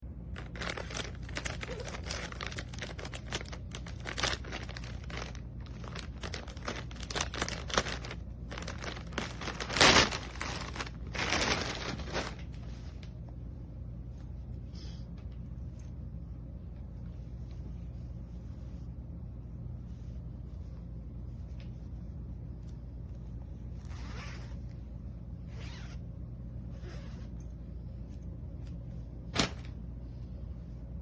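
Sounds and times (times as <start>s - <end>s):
steady low hum: 0.0s - 31.0s
packaging crinkling: 0.3s - 12.7s, 29.4s - 29.7s.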